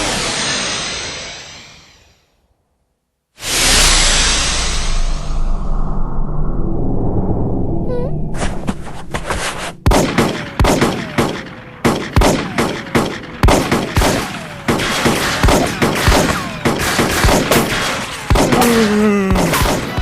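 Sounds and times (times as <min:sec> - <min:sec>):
falling whine: 0:03.4 - 0:09.9
cartoon gunshots: 0:09.9 - 0:20.0.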